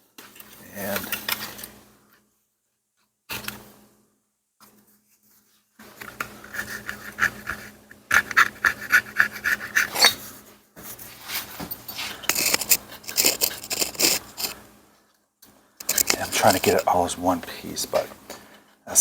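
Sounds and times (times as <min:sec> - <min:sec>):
razor blade scraping gasket: 0:06.0 - 0:10.3, 0:12.3 - 0:14.6, 0:15.8 - 0:16.9.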